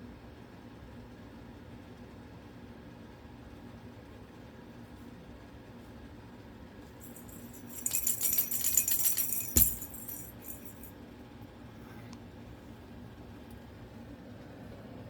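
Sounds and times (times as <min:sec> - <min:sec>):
metal bells jingling: 0:07.0 - 0:10.9.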